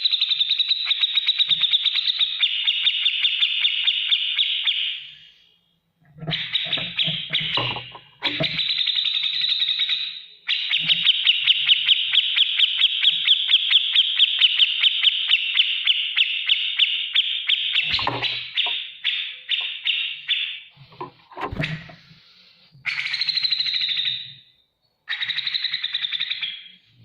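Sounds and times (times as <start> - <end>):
bird singing rapid trills: 8.4 - 20.6.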